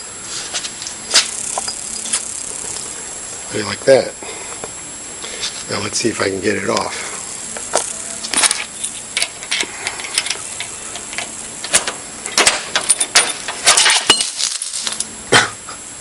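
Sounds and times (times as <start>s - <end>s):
padlock and chain rattling: 8.3s - 15.1s.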